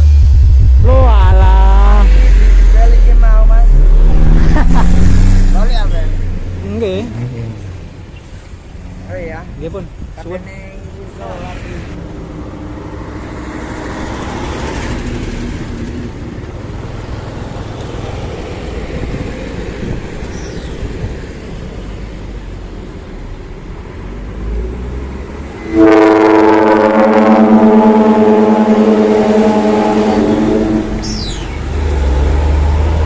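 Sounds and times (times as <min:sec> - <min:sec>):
diesel engine rumbling: 0:00.0 - 0:33.0
loud air horn blast: 0:25.7 - 0:31.2.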